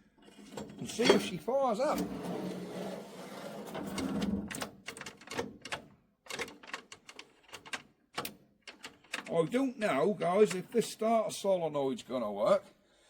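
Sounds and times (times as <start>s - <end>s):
light irregular clicks and knocks: 4.5s - 9.4s.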